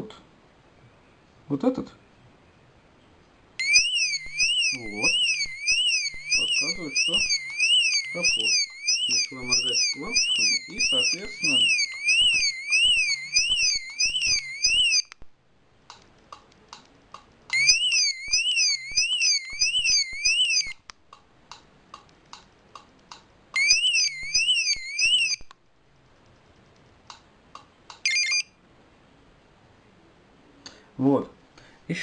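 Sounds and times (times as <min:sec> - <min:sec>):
warbling car alarm: 0:03.6 - 0:15.2, 0:17.5 - 0:20.8, 0:23.6 - 0:25.5, 0:28.0 - 0:28.6.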